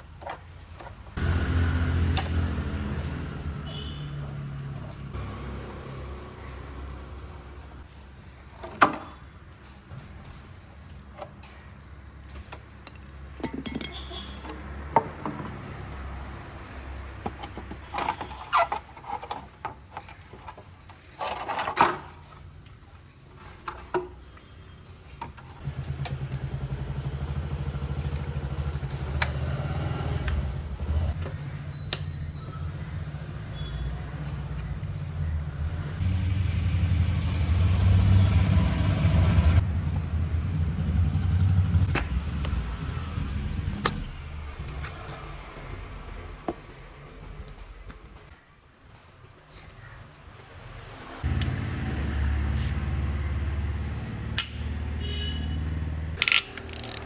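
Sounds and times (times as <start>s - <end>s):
motorcycle engine running: 1.2s - 7.8s, 25.6s - 31.2s, 33.1s - 44.9s
metal clinks and knocks: 12.3s - 14.6s, 56.2s - 57.0s.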